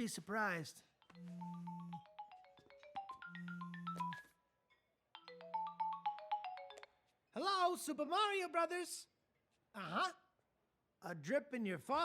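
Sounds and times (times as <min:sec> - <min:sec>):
phone ringtone melody: 0:01.0 - 0:04.4, 0:05.2 - 0:07.1.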